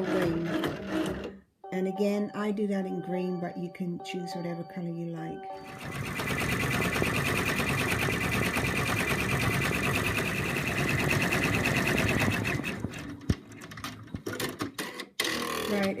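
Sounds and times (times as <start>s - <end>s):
embroidery machine stitching: 0.0s - 1.4s, 5.6s - 16.0s.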